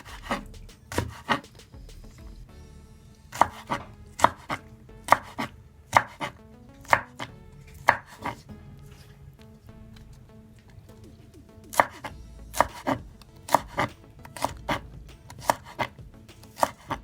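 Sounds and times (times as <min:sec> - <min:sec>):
knife chopping food: 0:00.0 - 0:01.6, 0:03.3 - 0:08.4, 0:11.7 - 0:17.0.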